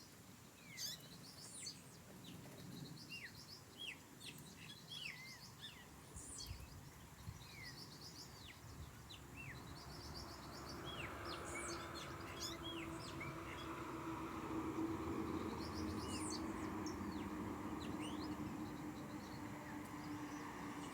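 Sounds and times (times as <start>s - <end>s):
small birds chirping: 0.0s - 20.9s.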